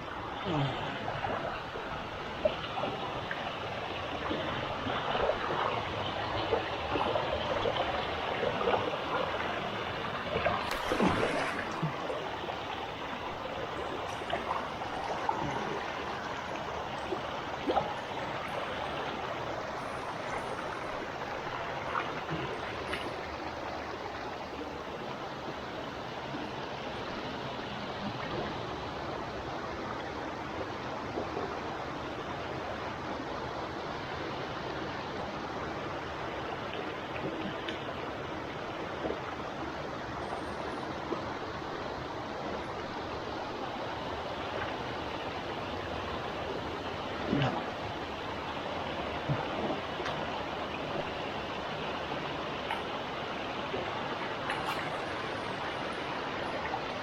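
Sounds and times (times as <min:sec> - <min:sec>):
water rushing over rocks: 0:00.0 - 0:32.6, 0:40.9 - 0:57.0
sharp knocks or splashes: 0:10.6 - 0:12.2.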